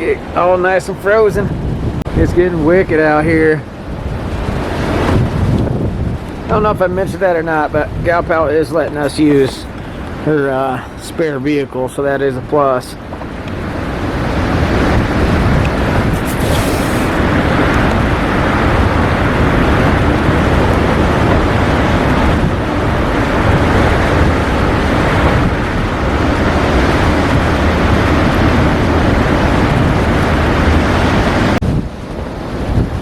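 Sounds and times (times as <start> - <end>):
blizzard wind buffeting microphone: 0.0 - 33.0.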